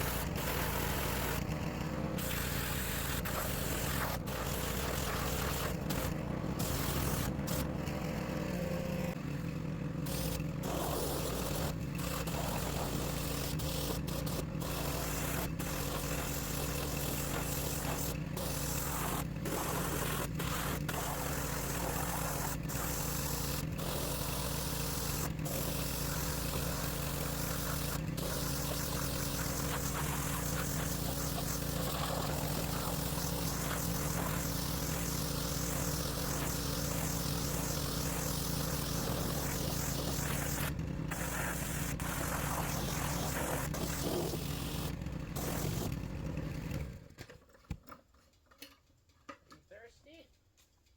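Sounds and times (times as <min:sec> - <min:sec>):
pressure washer motor hum: 0:00.0 - 0:47.2
water spray hiss: 0:25.5 - 0:44.8.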